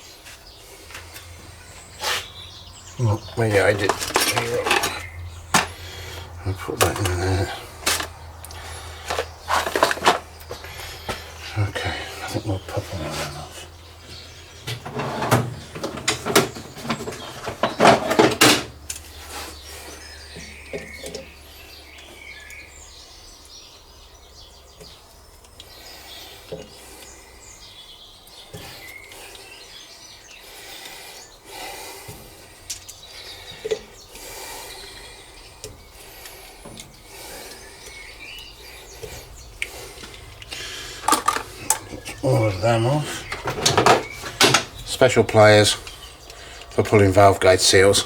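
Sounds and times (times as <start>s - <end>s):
metal tools clinking on workbench: 3.2s - 5.8s, 6.8s - 8.2s, 9.0s - 10.3s, 41.0s - 42.2s.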